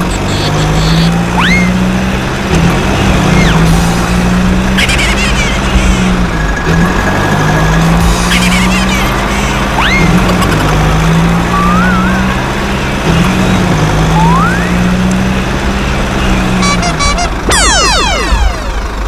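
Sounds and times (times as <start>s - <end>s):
truck engine drone: 0.0s - 19.0s
whistle-like rising glides: 11.5s - 12.5s, 13.4s - 14.9s, 16.6s - 19.0s
short beeps: 16.6s - 18.8s.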